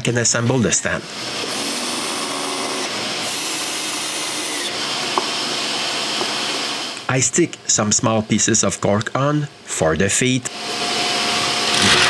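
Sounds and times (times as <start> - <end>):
power tool running: 1.1 - 7.0, 10.5 - 12.0.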